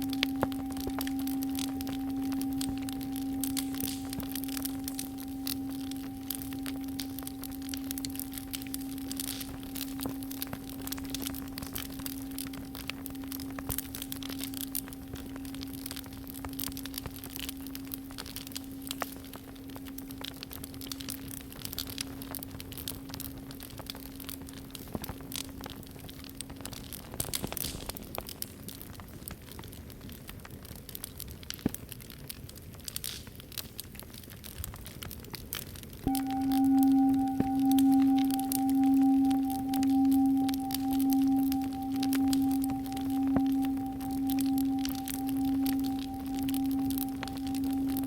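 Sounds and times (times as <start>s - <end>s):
singing bowl ringing: 0.0s - 19.0s, 36.1s - 48.0s
campfire crackling and popping: 0.0s - 48.0s.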